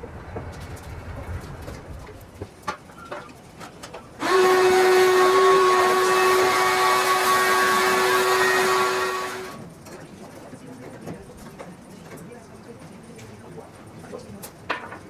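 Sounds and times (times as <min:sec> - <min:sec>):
small motor whining: 0:04.2 - 0:09.6.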